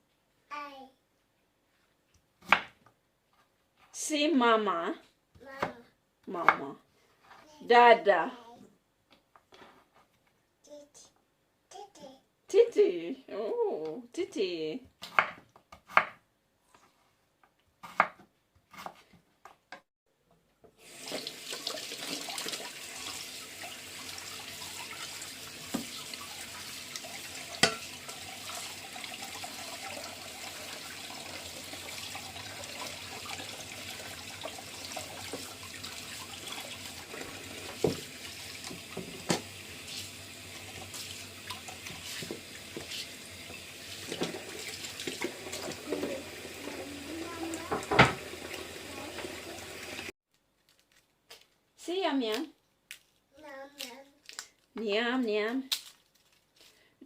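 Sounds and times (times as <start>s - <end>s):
tap water running into sink: 20.8s - 50.1s.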